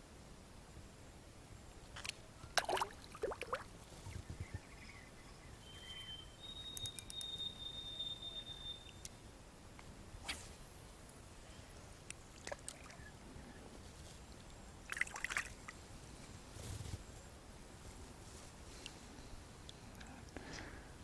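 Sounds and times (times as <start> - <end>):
outdoor ambience: 0.0 - 21.0
bird whistled note: 5.6 - 9.1
scattered clicks: 6.7 - 7.4.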